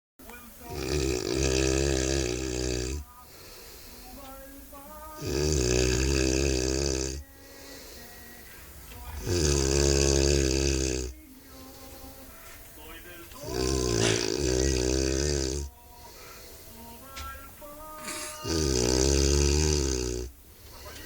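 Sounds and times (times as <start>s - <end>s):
quiet breathing: 0.3s - 21.0s
man snoring loudly: 0.6s - 4.2s, 5.0s - 12.3s, 13.3s - 17.0s, 17.9s - 21.0s.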